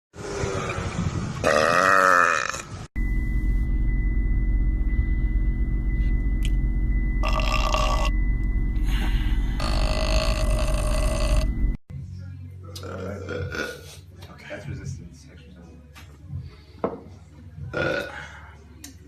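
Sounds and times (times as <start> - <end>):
man burping: 1.4 - 2.7, 9.6 - 11.5, 12.8 - 13.8, 17.7 - 18.2
thin steady tone: 3.0 - 11.8
steady low rumble: 3.0 - 12.2.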